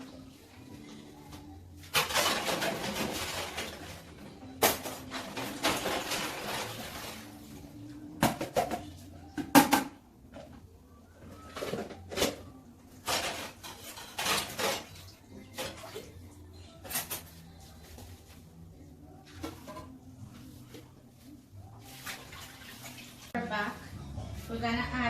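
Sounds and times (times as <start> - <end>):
plates and pots clattering: 1.8 - 7.3, 8.2 - 10.6, 11.4 - 16.1, 16.8 - 18.0, 19.3 - 20.0.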